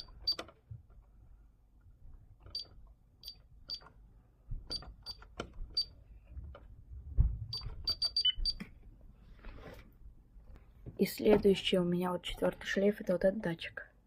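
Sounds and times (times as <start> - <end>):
keypad beeps: 0.0 - 0.4, 2.5 - 3.9, 4.7 - 6.0, 7.5 - 8.7.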